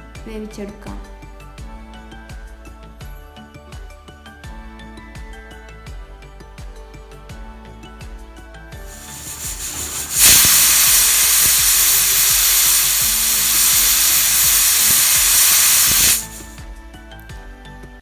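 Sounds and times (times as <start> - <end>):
pressure cooker hissing steam: 8.8 - 16.6.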